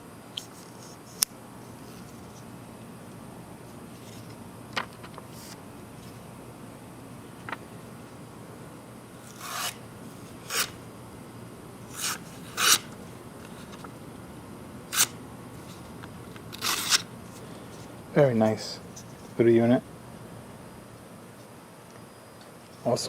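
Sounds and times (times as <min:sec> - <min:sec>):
folding knife scrapes and clicks: 0:09.3 - 0:09.8, 0:10.5 - 0:10.8, 0:11.9 - 0:12.9, 0:16.5 - 0:17.1.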